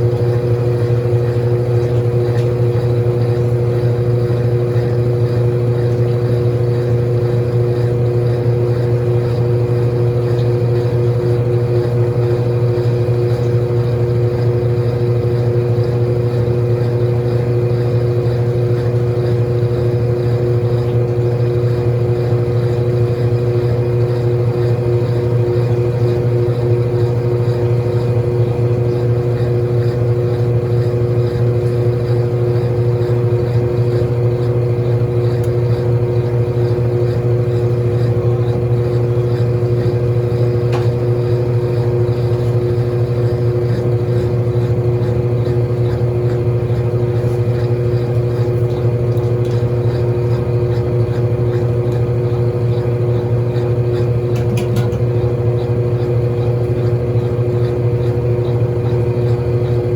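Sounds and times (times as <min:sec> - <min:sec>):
washing machine motor humming: 0:00.0 - 0:59.9.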